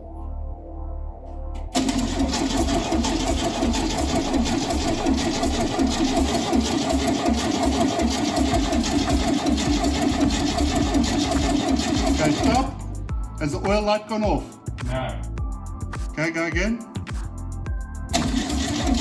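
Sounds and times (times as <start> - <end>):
engine cranking without firing: 1.7 - 12.8, 18.1 - 19.0.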